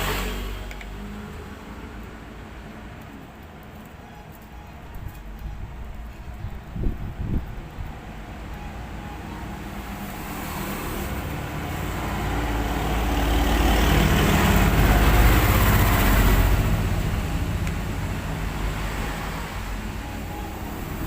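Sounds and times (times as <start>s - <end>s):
vehicle engine passing by: 0.0s - 2.0s, 9.7s - 21.0s.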